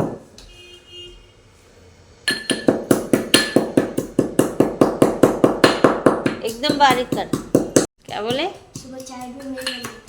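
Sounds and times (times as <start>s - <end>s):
pestle pounding in a mortar: 2.3s - 10.0s.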